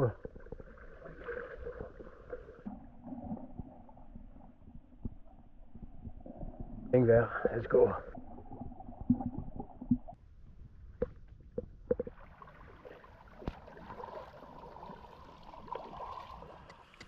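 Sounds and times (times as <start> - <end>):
water splashing along kayak hull: 11.9 - 17.0.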